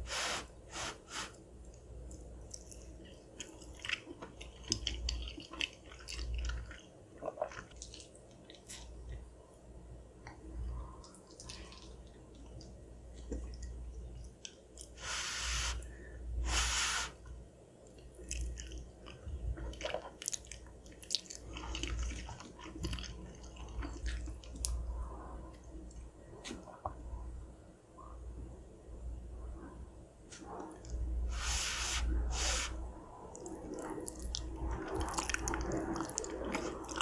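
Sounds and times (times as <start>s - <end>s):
chewing with mouth clicks: 1.6s - 9.3s, 10.2s - 15.0s, 17.8s - 27.0s, 33.3s - 37.0s.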